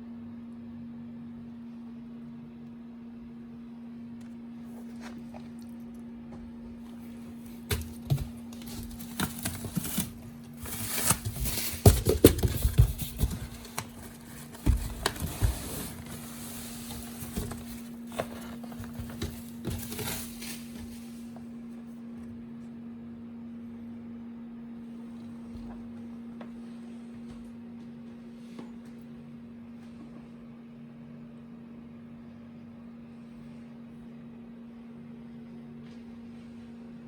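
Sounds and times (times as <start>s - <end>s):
steady low hum: 0.0s - 37.0s
packaging crinkling and rustling: 6.9s - 21.5s.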